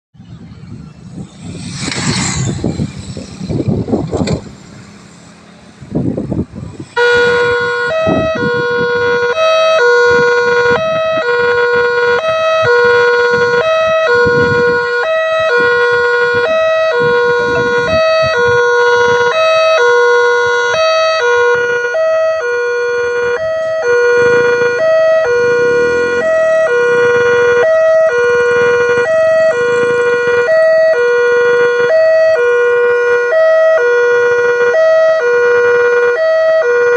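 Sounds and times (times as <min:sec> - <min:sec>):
road traffic noise: 0:00.1 - 0:36.9
two-tone crossing alarm: 0:07.0 - 0:36.9.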